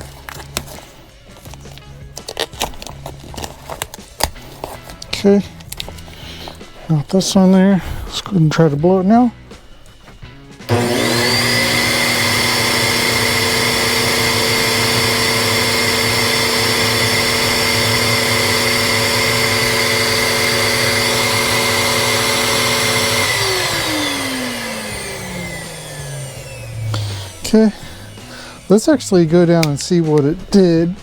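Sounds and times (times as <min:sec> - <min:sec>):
vacuum motor whining: 0:10.7 - 0:29.7.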